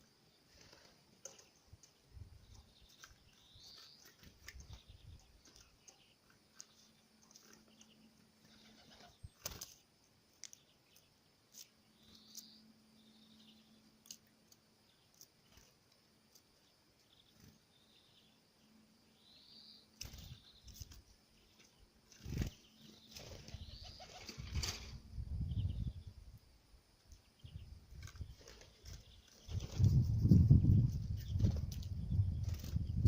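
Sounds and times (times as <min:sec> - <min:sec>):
wing flutters and knocks: 0:00.5 - 0:11.7, 0:20.0 - 0:25.1, 0:27.9 - 0:33.0.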